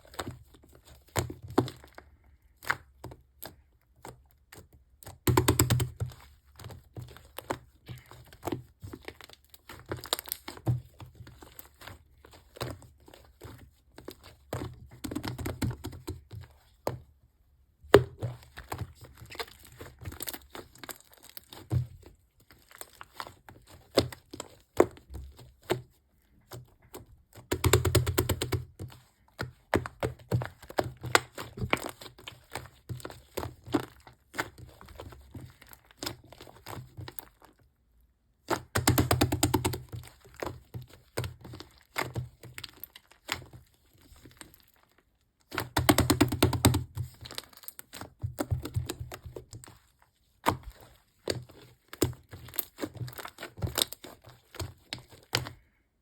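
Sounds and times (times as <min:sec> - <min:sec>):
slime kneaded by hand: 0:00.0 - 0:56.0.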